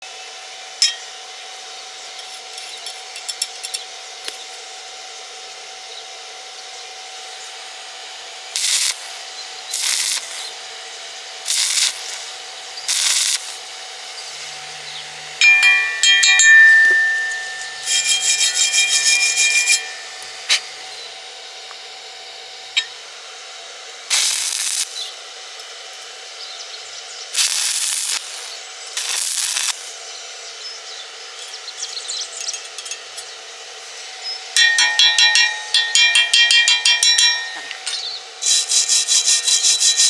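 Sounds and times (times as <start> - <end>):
rasping tool strokes on metal: 8.6 - 10.6, 11.5 - 13.6, 15.5 - 20.8, 24.1 - 25.1, 27.4 - 29.9, 34.6 - 40.0.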